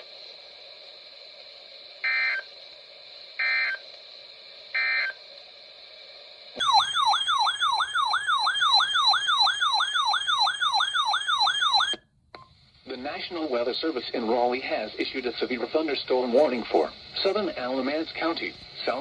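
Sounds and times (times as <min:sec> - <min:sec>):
digital data tone bursts: 0:06.6 - 0:12.0.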